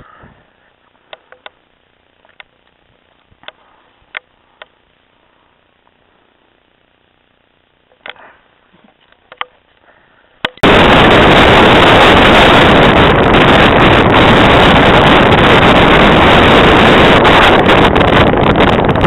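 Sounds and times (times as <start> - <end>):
faint clicks: 0.8 - 1.6, 2.2 - 4.8
loud steady rushing noise: 10.4 - 19.0.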